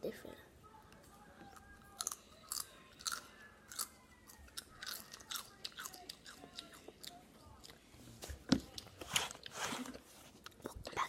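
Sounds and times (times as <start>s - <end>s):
chips being chewed: 1.6s - 7.8s.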